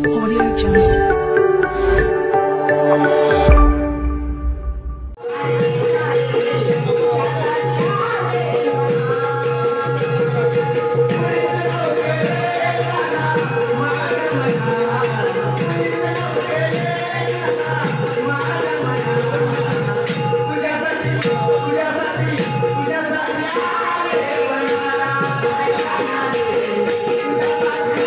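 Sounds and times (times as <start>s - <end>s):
low drum beat: 0.0s - 2.1s
melody over drone: 0.0s - 5.2s.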